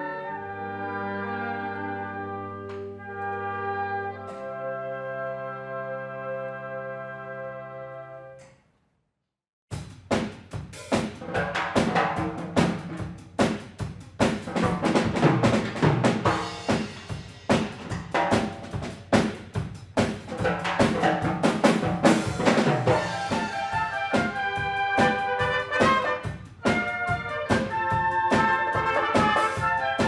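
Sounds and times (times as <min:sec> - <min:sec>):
held brass chords: 0:00.0 - 0:08.4, 0:22.3 - 0:30.0
wind band playing: 0:00.0 - 0:08.4, 0:21.0 - 0:30.0
drum kit beat: 0:09.7 - 0:30.0.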